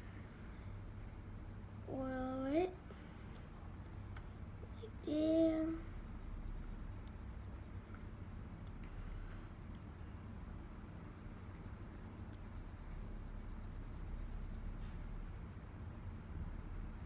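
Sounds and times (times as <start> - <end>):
low steady hum: 0.0 - 17.0
pencil scratching on paper: 11.0 - 17.0.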